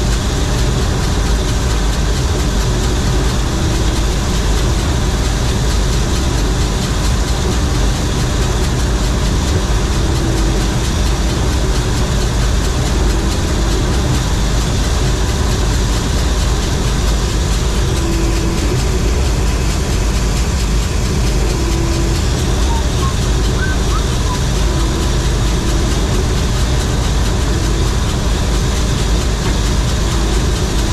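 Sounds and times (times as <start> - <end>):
combine diesel rumble: 0.0 - 30.9
threshing machinery whir: 0.0 - 30.9.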